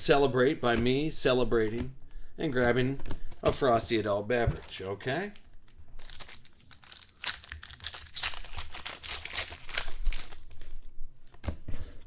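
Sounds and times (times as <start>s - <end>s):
wrapper tearing and crinkling: 5.6s - 10.7s.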